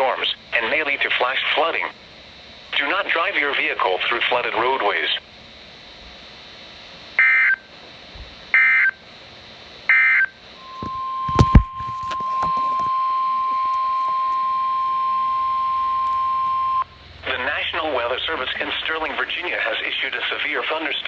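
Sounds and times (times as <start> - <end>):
steady warning alarm tone: 7.2 - 7.7, 8.5 - 9.0, 9.9 - 21.0.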